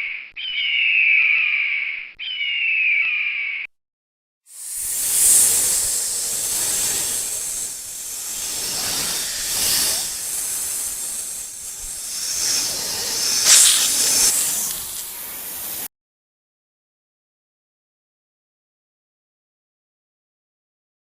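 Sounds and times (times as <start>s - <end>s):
snakes hissing: 4.5s - 15.9s.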